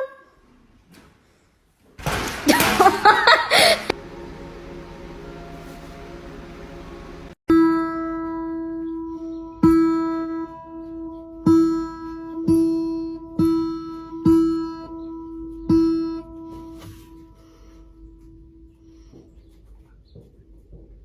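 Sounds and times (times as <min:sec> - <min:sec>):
acoustic guitar strummed chords: 0:04.0 - 0:08.0.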